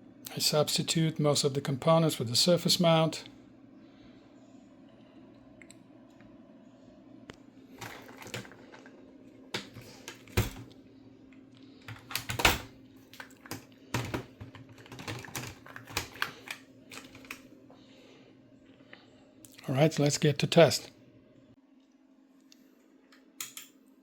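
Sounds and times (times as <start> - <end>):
mechanical keyboard clicks and clacks: 13.5 - 17.4.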